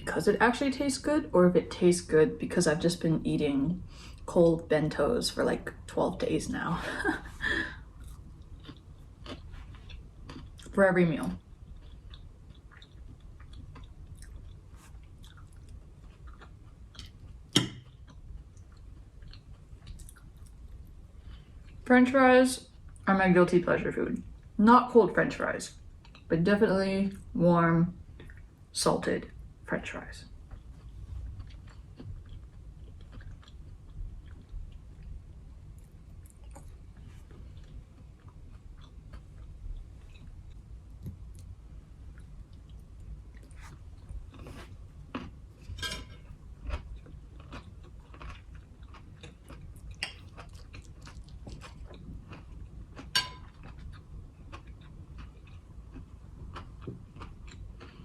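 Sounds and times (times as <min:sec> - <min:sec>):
person chewing food: 0:07.8 - 0:10.8, 0:11.4 - 0:21.8, 0:30.4 - 0:58.0.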